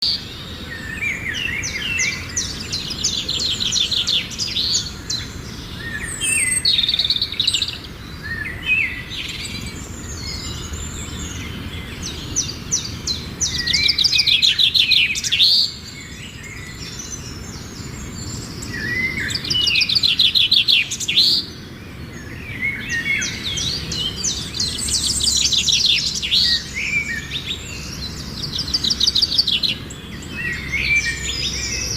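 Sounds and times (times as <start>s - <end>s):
songbirds trilling and chirping: 0.0s - 31.9s.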